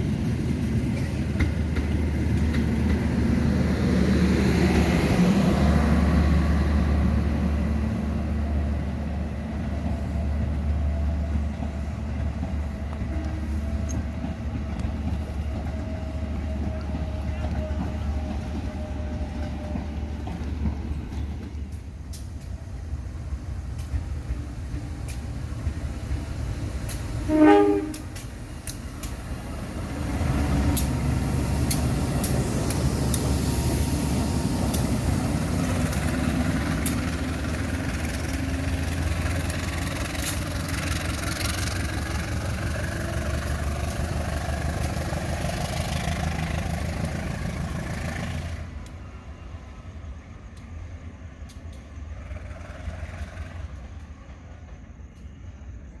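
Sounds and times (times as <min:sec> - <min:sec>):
train wheels clicking over rails: 0:00.0 - 0:49.1, 0:49.8 - 0:56.0
train low rumble: 0:00.0 - 0:56.0
train horn blast: 0:27.1 - 0:28.3.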